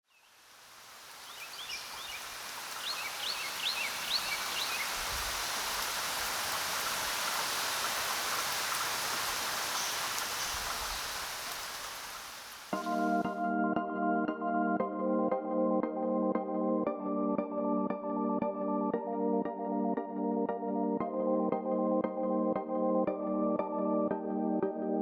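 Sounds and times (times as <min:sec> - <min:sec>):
water hissing: 0:00.4 - 0:12.8
bird chirping: 0:01.2 - 0:05.2.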